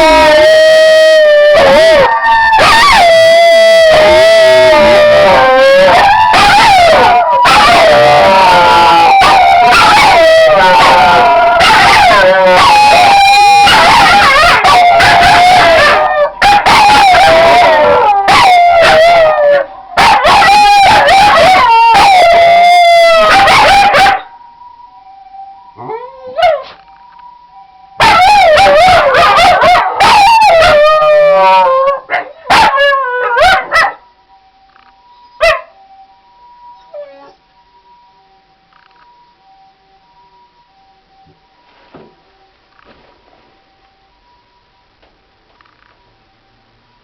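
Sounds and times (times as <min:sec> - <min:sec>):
dogs howling: 0:00.0 - 0:24.3, 0:25.8 - 0:26.7, 0:28.0 - 0:34.0, 0:36.8 - 0:37.4
two-tone ambulance siren: 0:00.0 - 0:47.0
dogs yipping: 0:32.1 - 0:34.0, 0:35.4 - 0:35.7.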